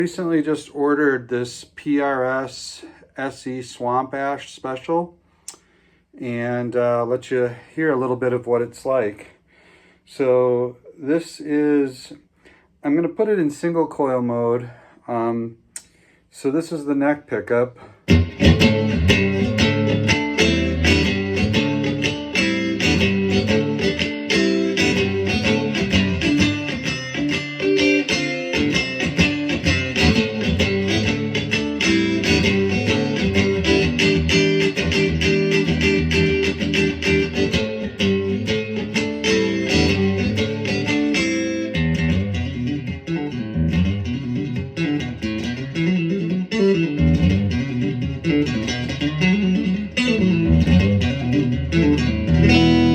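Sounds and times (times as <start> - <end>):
electric guitar playing: 18.1 - 52.9.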